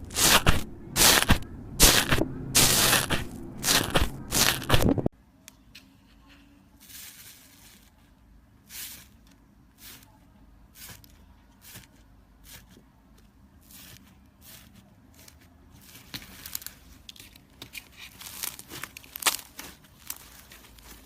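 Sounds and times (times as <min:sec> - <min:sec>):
crunchy slime squishes: 0:00.0 - 0:05.0, 0:13.6 - 0:21.0.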